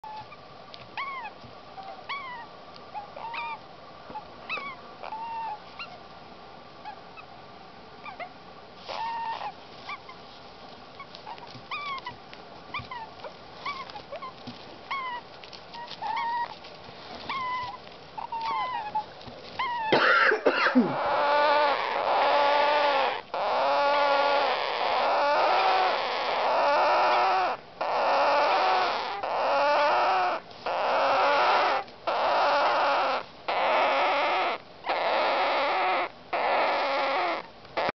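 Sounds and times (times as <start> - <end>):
parakeet chicks calling: 1.0 - 6.0, 8.9 - 10.2, 11.0 - 16.5, 17.3 - 37.9.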